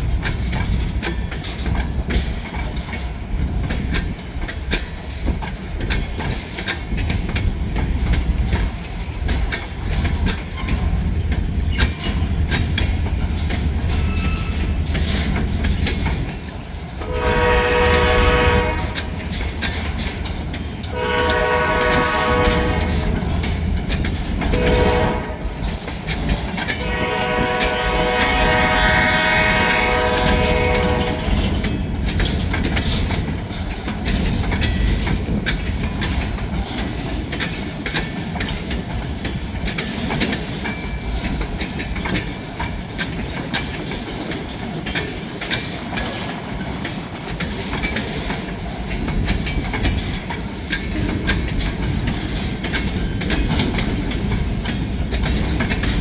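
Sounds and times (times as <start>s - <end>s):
train cars rumbling past: 0.0s - 56.0s
wheels clicking over rail joints: 0.0s - 56.0s
freight train horn: 17.0s - 19.4s, 20.9s - 23.5s, 24.4s - 25.7s, 26.7s - 31.9s.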